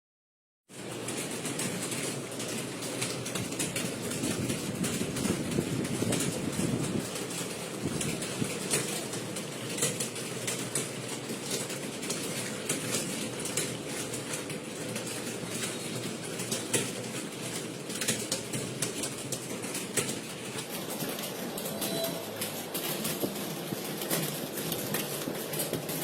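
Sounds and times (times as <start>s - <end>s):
keyboard typing clicks: 21.1s - 25.8s.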